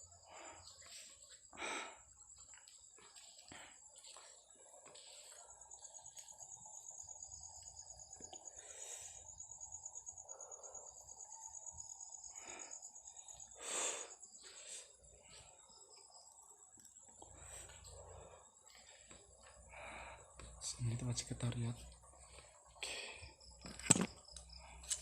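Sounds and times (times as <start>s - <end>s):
insects trilling: 0.0s - 25.0s.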